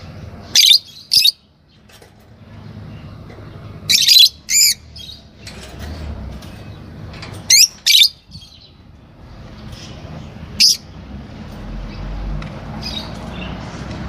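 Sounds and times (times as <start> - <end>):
lovebirds chirping shrilly: 0.4 - 1.6, 3.8 - 5.4, 7.5 - 8.8, 9.7 - 11.0.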